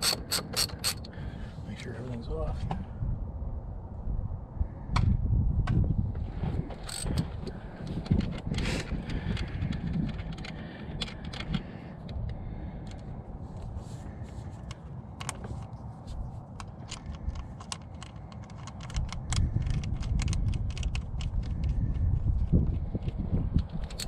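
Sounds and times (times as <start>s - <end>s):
hand tools clicking and tapping: 0.0s - 1.1s, 16.6s - 21.8s
steady low rumble: 0.0s - 24.0s.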